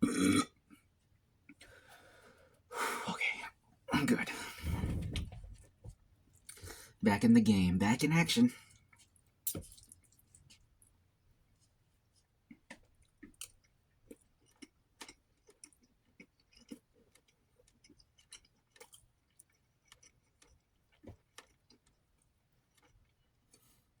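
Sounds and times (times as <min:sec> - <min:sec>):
person chewing food: 0:08.9 - 0:10.9, 0:11.6 - 0:24.0.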